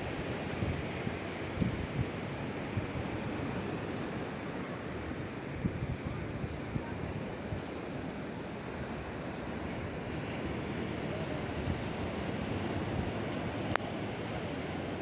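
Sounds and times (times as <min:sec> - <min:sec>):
wind buffeting microphone: 0:00.0 - 0:04.4
ocean surf breaking on beach: 0:00.0 - 0:15.0.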